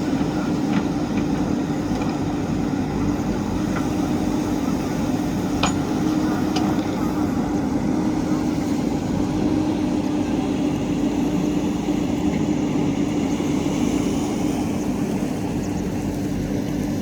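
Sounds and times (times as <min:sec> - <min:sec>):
diesel engine running: 0:00.0 - 0:17.0.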